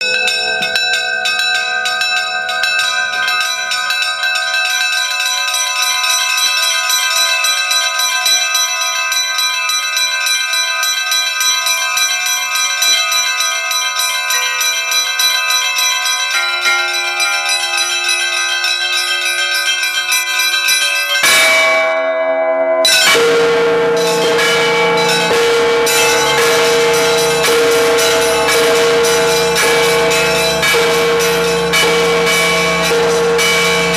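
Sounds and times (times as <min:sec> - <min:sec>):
deep bell: 0:00.0 - 0:05.4, 0:21.2 - 0:33.9
church bells ringing: 0:00.0 - 0:33.9.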